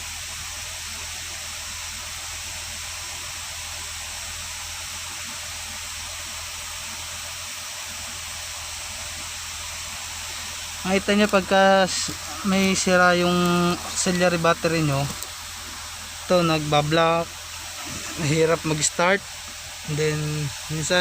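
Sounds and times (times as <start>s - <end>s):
car engine idling: 9.4s - 21.0s.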